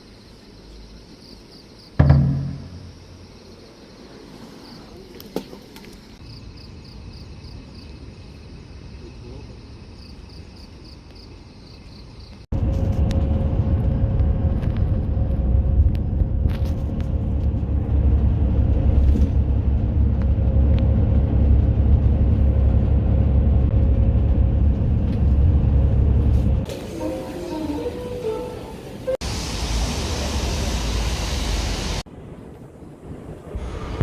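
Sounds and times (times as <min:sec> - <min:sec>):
road vehicle rumble: 0:12.4 - 0:34.0.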